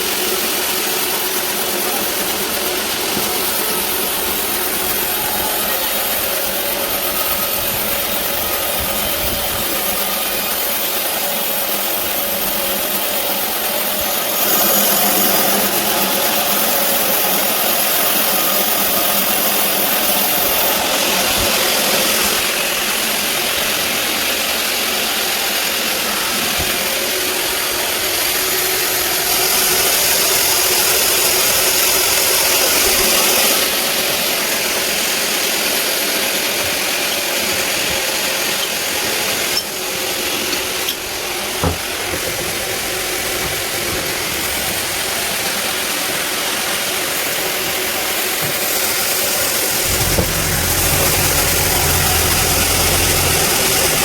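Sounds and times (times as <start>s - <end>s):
band saw cutting log: 0.1s - 24.8s, 46.6s - 54.0s.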